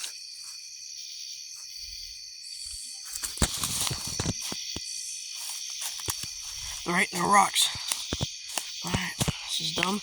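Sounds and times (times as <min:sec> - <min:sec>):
insects chirring: 0:00.0 - 0:10.0
footsteps crunching on ground: 0:03.0 - 0:10.0.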